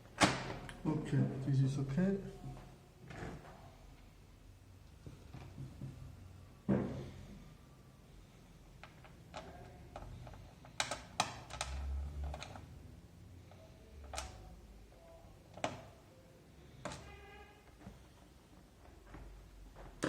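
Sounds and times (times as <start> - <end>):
keyboard parts clicking and tapping: 8.8 - 12.7, 13.5 - 14.5.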